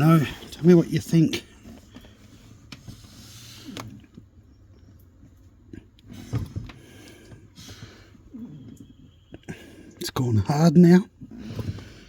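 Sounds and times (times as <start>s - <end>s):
dull brake clunk: 6.0s - 8.0s.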